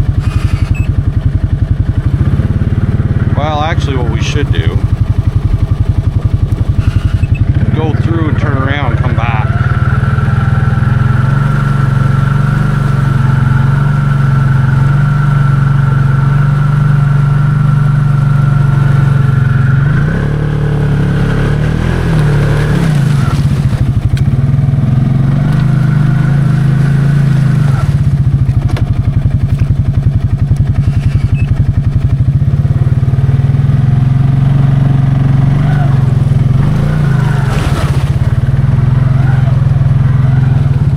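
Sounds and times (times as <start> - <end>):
steady high whine: 0.0 - 23.3
atv engine running under load: 0.0 - 40.9.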